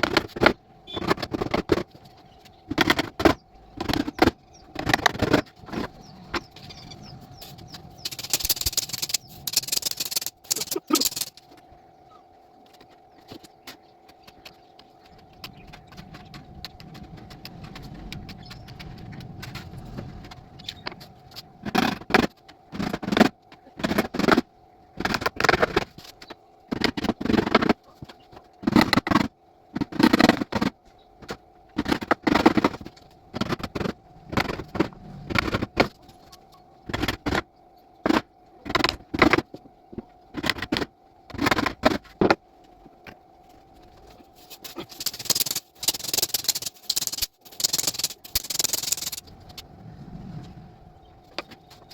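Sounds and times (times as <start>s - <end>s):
faint hum: 0.0s - 51.9s
scraping strokes on wood: 44.0s - 49.2s.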